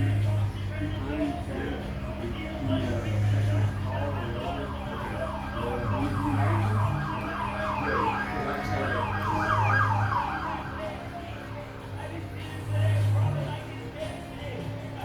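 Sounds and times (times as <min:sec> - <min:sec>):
background music with deep bass: 0:00.0 - 0:15.0
rapid yelping siren: 0:04.2 - 0:11.6.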